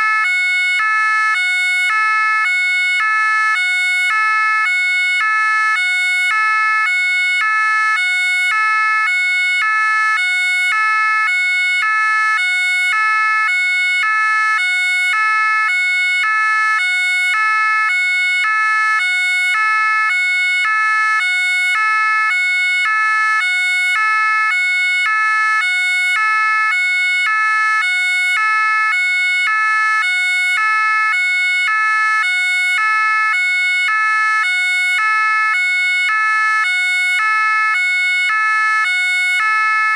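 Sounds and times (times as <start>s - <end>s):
two-tone siren: 0.0s - 39.9s.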